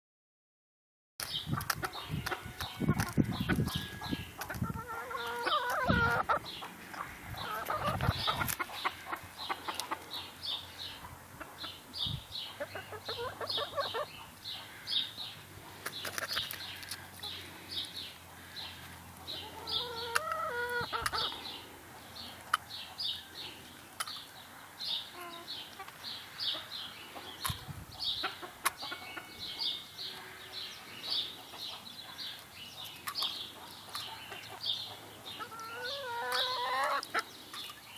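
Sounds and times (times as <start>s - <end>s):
chicken clucking and squawking: 1.5s - 23.2s, 25.0s - 37.8s.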